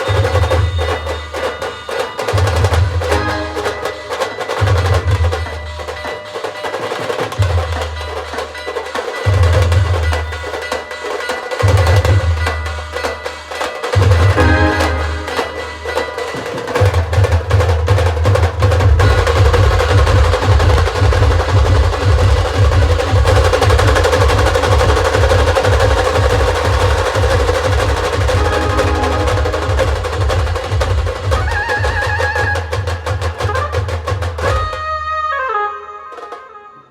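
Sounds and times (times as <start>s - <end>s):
wavering high melody: 0.0s - 5.1s, 14.3s - 16.6s, 23.3s - 33.8s
rapid sharp drum strikes: 0.0s - 35.0s
heavy dhol beats: 0.0s - 36.9s
deep low drum notes: 18.8s - 32.2s.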